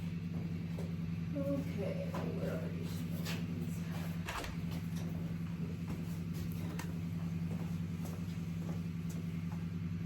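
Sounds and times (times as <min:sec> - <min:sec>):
car engine idling: 0:00.0 - 0:10.0.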